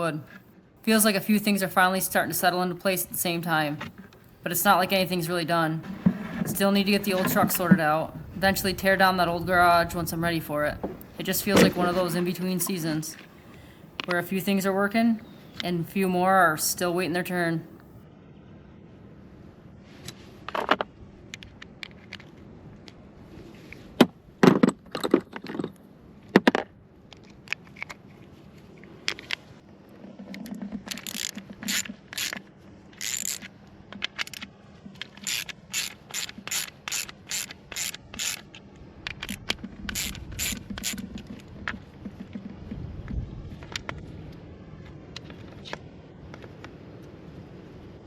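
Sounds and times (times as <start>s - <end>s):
rasping ratchet-like strokes: 30.9s - 32.4s, 33.0s - 33.5s, 35.1s - 38.5s, 39.2s - 41.2s.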